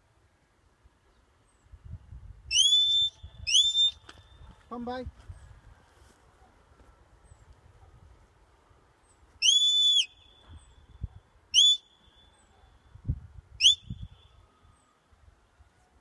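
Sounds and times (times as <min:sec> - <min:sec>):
high-pitched whistle blasts: 0:02.5 - 0:04.1, 0:09.4 - 0:10.8, 0:11.5 - 0:12.4, 0:13.6 - 0:14.6.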